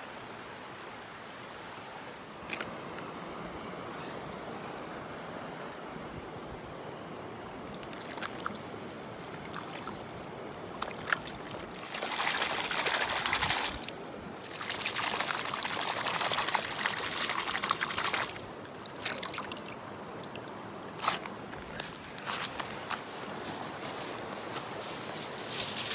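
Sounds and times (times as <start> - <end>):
stream flowing: 0.0 - 25.9
water pouring and splashing: 10.7 - 19.8, 21.0 - 25.9.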